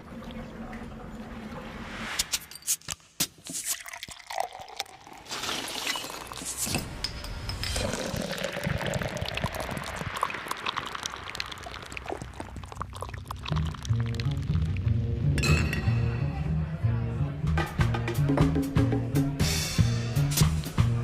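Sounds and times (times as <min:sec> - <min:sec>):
liquid pouring: 0:00.0 - 0:02.0, 0:03.4 - 0:06.8, 0:07.5 - 0:15.0.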